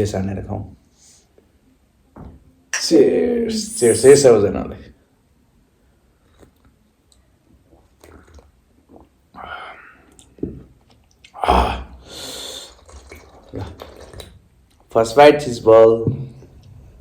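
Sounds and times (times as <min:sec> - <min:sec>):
chewing and mouth clicks: 0:06.3 - 0:09.2, 0:10.1 - 0:11.4.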